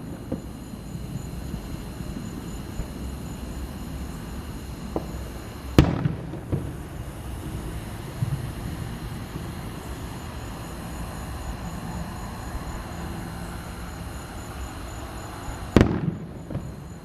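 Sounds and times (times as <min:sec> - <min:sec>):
fireworks low rumble: 0:00.0 - 0:17.0
fireworks pops: 0:04.8 - 0:05.2
loud firework bang: 0:05.8 - 0:06.8, 0:15.8 - 0:16.7.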